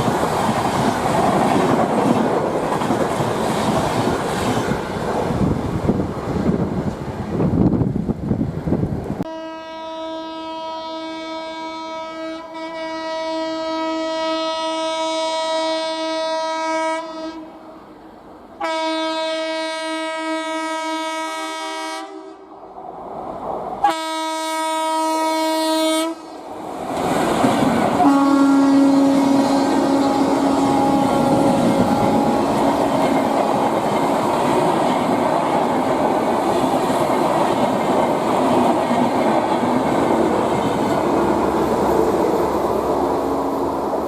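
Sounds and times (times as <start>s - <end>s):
rush of passing train: 0.0s - 44.0s
locomotive horn blasts: 9.3s - 17.5s, 18.6s - 22.5s, 23.8s - 26.4s, 28.0s - 32.6s.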